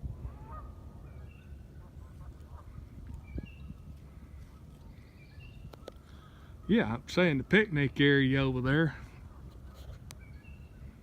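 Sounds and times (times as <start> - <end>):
waterfowl calling: 0.3 - 3.5.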